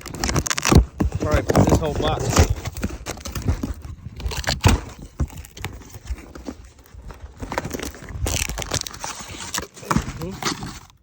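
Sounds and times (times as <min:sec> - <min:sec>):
chip bags crinkling: 0:05.2 - 0:11.0.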